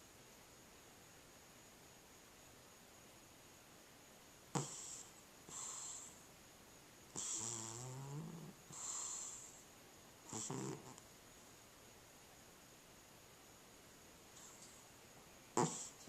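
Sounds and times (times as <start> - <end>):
cat snoring: 4.5 - 6.2, 7.2 - 9.6, 10.3 - 11.0, 15.6 - 16.0.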